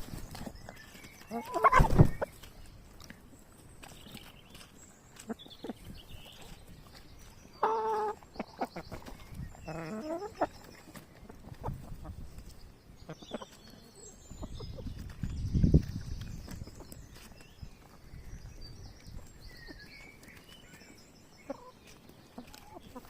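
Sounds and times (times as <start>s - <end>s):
hens clucking: 1.1s - 3.0s, 5.2s - 15.1s, 21.4s - 23.0s
loud hen calls: 1.3s - 2.0s.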